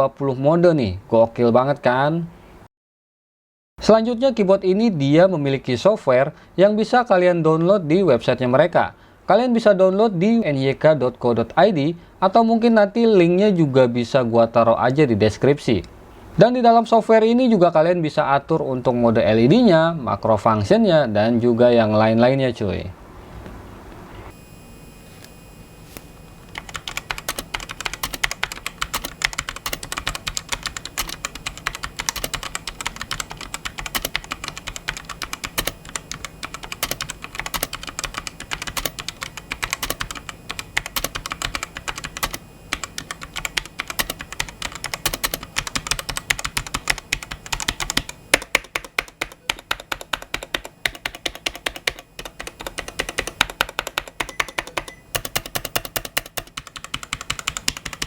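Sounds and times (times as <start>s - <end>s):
fast typing on mechanical keyboard: 26.6s - 58.0s.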